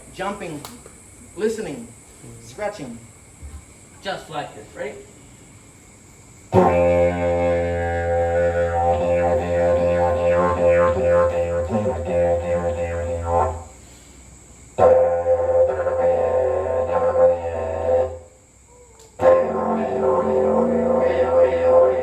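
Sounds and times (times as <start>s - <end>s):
didgeridoo drone with rhythmic pulses: 6.5s - 13.8s, 14.8s - 18.4s, 19.2s - 22.0s.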